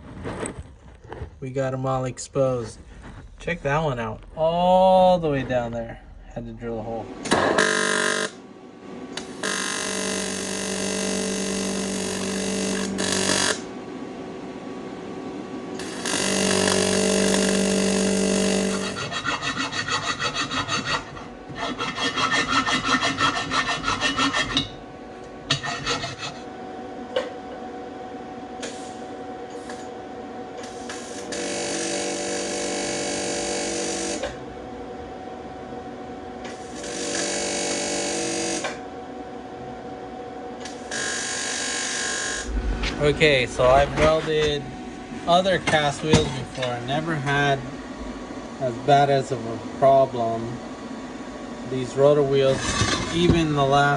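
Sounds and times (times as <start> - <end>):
bit rasping on metal: 18.7 - 24.7, 25.5 - 26.4.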